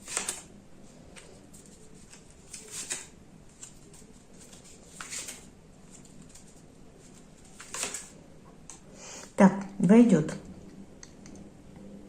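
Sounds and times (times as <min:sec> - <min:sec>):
cards swishing: 0:00.0 - 0:00.5, 0:01.1 - 0:08.2.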